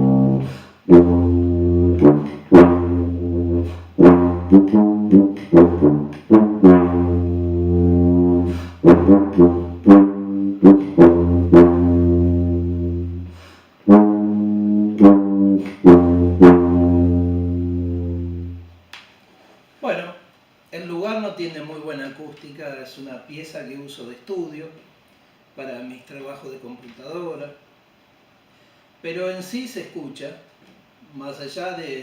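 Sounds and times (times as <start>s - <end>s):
tuba playing low notes: 0.0s - 18.8s.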